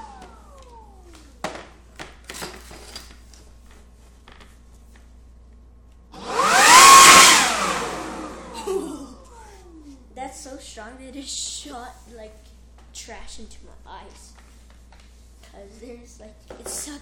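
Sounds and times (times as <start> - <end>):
leaf blower blast: 6.2 - 9.4.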